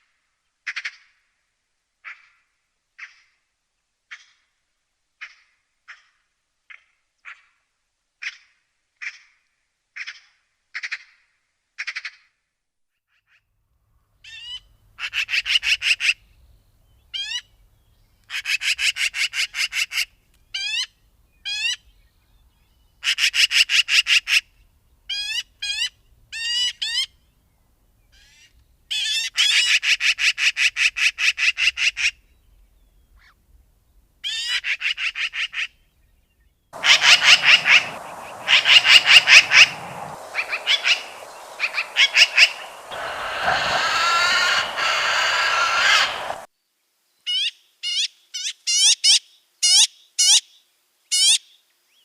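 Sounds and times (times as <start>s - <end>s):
magpie chattering: 36.8s - 46.4s
magpie short rising calls: 36.8s - 46.5s.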